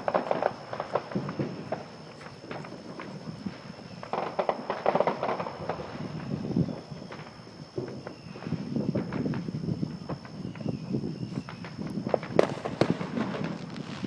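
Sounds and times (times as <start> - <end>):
firecrackers popping: 0.0 - 14.0.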